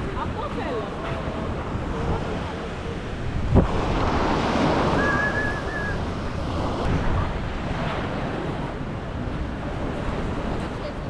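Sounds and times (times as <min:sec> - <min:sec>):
waves breaking on shore: 0:00.0 - 0:11.0
wind buffeting microphone: 0:00.0 - 0:11.0
wind rushing: 0:01.3 - 0:09.6.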